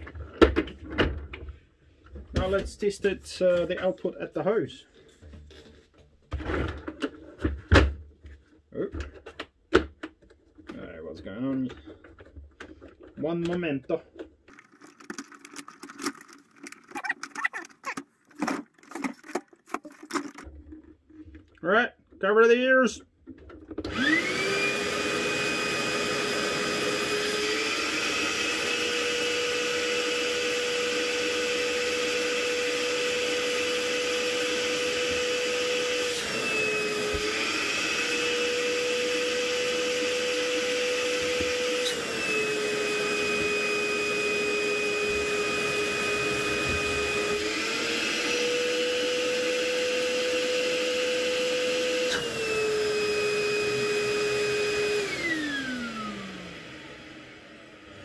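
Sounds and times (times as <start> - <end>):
shop vacuum motor whine: 23.8 - 58.0.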